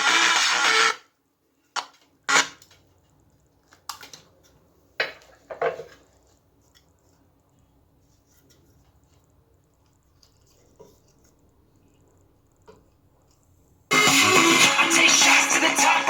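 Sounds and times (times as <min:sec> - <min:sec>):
music playback: 0:13.9 - 0:16.0.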